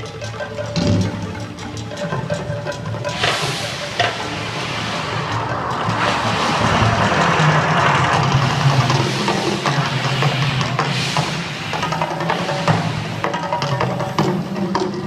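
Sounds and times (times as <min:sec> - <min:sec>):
drum-led show music: 0:00.0 - 0:15.0
fire effects roaring: 0:03.1 - 0:13.6.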